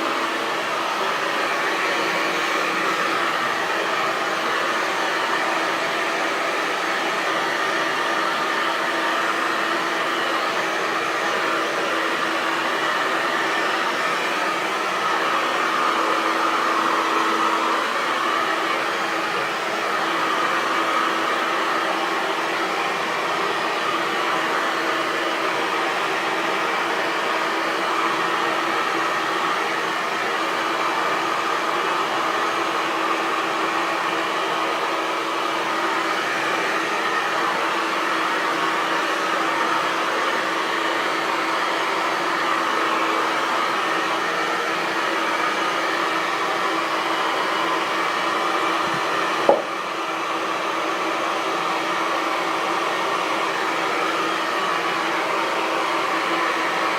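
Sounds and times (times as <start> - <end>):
hair dryer running: 0.0 - 56.9.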